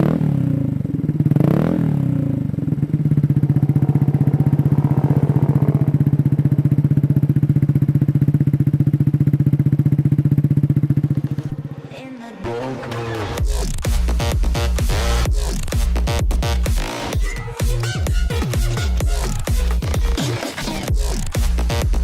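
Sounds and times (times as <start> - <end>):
motorcycle engine revving and idling: 0.0 - 22.0.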